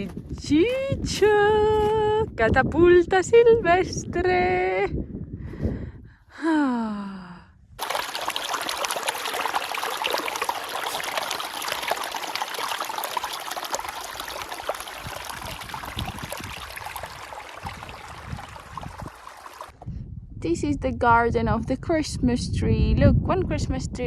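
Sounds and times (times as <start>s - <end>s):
running water trickling and splashing: 7.8s - 19.8s.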